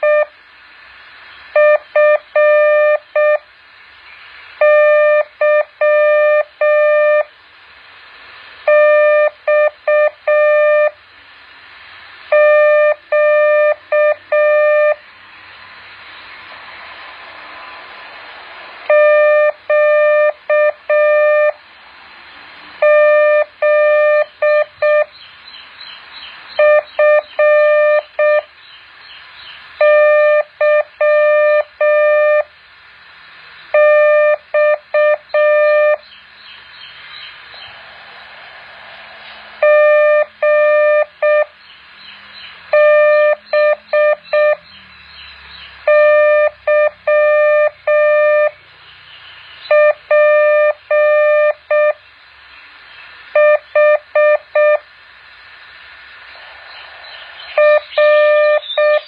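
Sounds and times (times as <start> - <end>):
morse code beeps: 0.0 - 0.3, 1.6 - 3.4, 8.7 - 10.9, 12.3 - 15.0, 18.9 - 21.6, 22.8 - 25.1, 26.6 - 28.5, 39.6 - 41.5, 42.7 - 44.6, 45.9 - 48.5, 49.7 - 52.0, 53.4 - 54.8, 57.6 - 59.0
faint hiss: 0.0 - 59.0.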